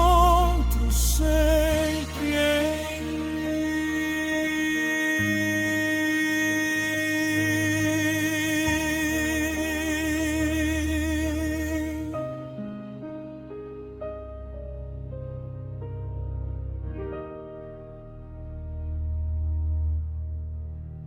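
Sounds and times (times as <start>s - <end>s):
person singing with vibrato: 0.0s - 12.6s
soft sustained chords: 0.0s - 21.0s.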